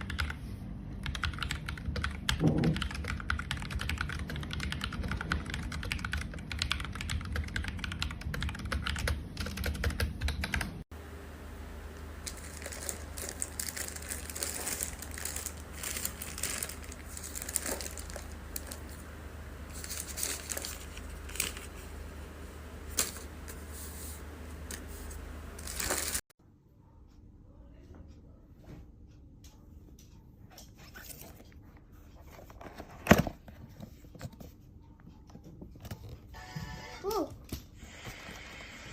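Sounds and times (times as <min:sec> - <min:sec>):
mechanical keyboard typing: 0:00.0 - 0:00.4, 0:01.0 - 0:10.8.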